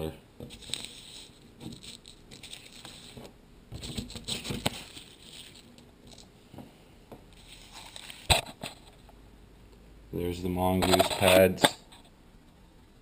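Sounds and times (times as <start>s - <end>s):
rustling handling noise: 0.4s - 9.1s, 10.7s - 12.1s.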